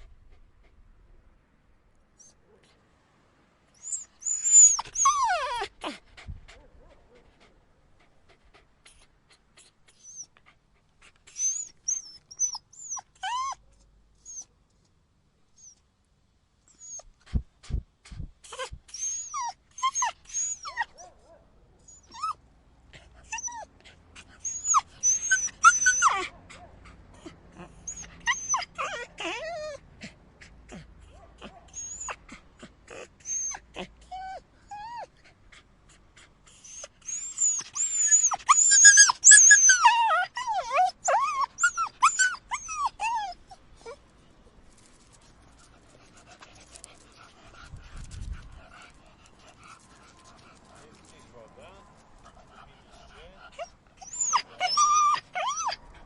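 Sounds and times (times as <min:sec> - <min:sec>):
dogs yelping and whimpering: 0:03.8 - 0:07.3, 0:11.2 - 0:13.6, 0:18.5 - 0:21.2, 0:21.8 - 0:22.4, 0:23.3 - 0:35.2, 0:36.6 - 0:44.0, 0:52.4 - 0:56.0.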